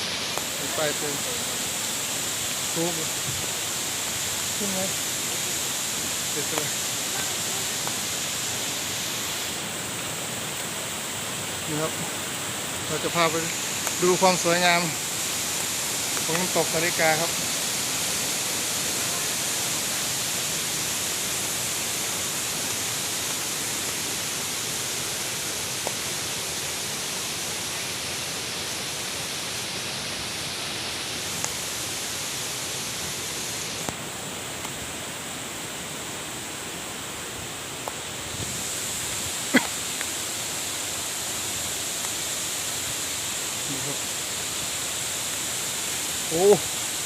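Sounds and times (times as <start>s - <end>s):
waterfall rushing: 0.0s - 47.0s.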